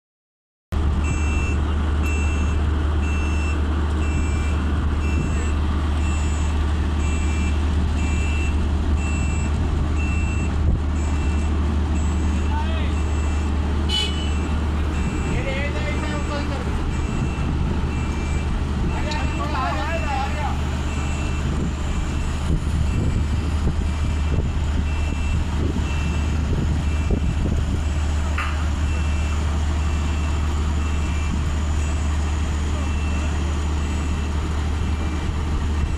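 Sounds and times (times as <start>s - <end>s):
diesel engine running: 0.8s - 35.9s
warning alarm beeping: 1.0s - 28.0s, 28.9s - 34.4s
warning beeper short high beeps: 7.1s - 21.4s.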